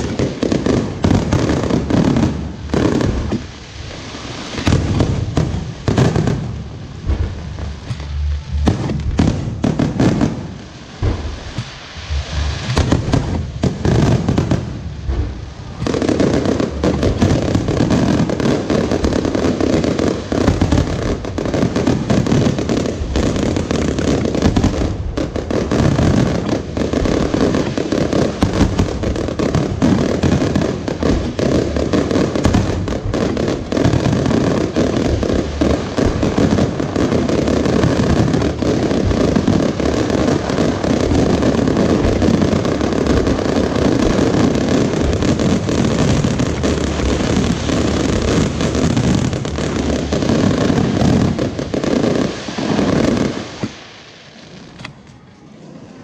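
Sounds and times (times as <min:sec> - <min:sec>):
fireworks bangs: 0:00.0 - 0:56.0
fireworks crackling: 0:00.0 - 0:56.0.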